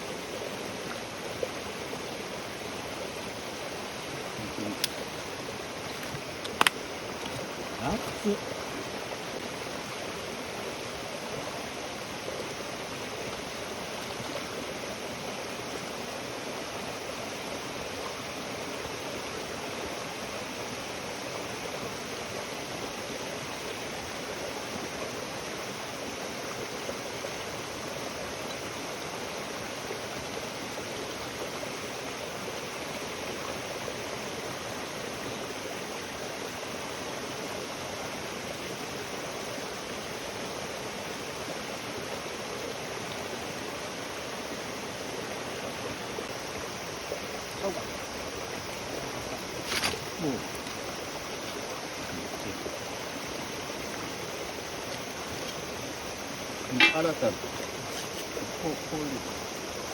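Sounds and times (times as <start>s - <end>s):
flowing water rushing: 0.0s - 59.9s.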